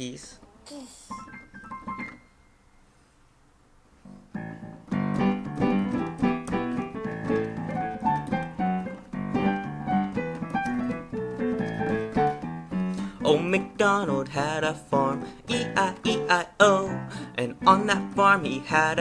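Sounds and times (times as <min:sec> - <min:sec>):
piano playing chords: 0:04.1 - 0:19.0.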